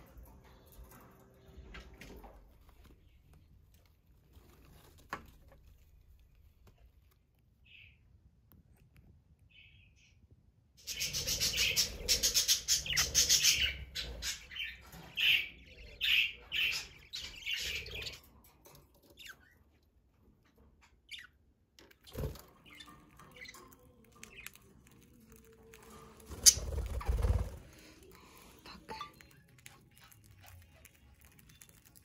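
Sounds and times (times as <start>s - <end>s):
budgerigars chirping: 10.8s - 18.2s.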